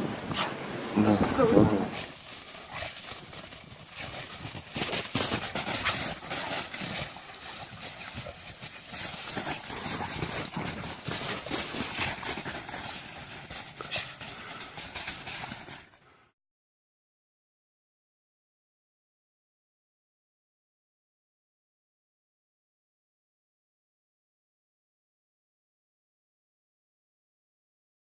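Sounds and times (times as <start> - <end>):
footsteps crunching in snow: 0.0 - 16.3.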